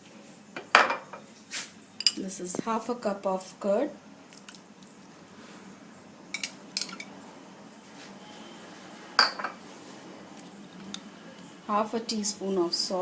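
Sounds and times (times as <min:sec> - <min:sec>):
spoon clinking on dishware: 0:06.4 - 0:07.1, 0:09.2 - 0:09.6.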